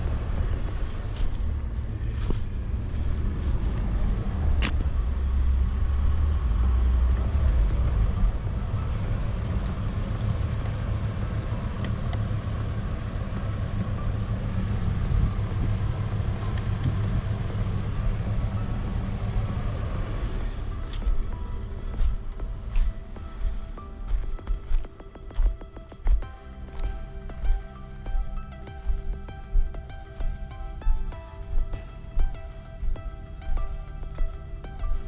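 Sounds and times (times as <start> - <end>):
engine idling: 0.0 - 35.0
sharp click: 4.6 - 4.8.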